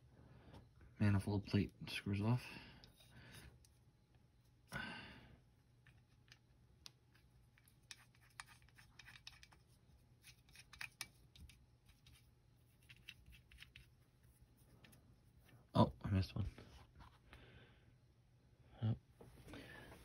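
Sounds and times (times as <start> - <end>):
screwdriver scratching and clicking: 5.9 - 12.2.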